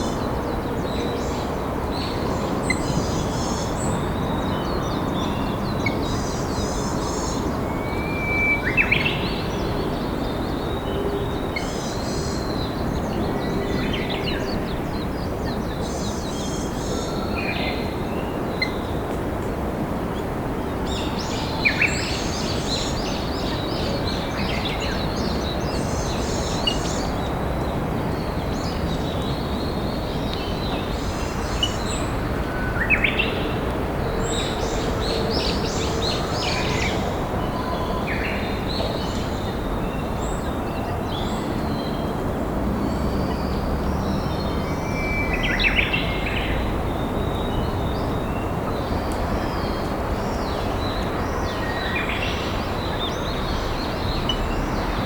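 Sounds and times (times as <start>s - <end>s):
lower bird calls with falling notes: 2.6s - 12.8s.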